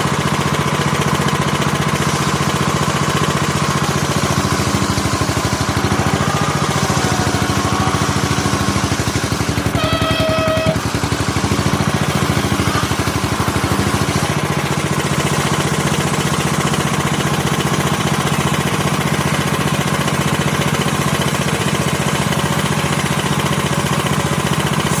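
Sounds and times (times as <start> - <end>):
chainsaw engine running: 0.0 - 25.0
brief high tone: 9.6 - 11.0.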